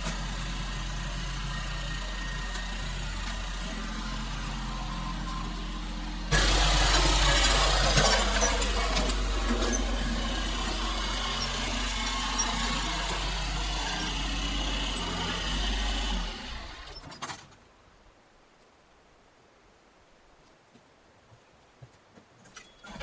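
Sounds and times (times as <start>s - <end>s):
diesel engine running: 0.0s - 17.1s.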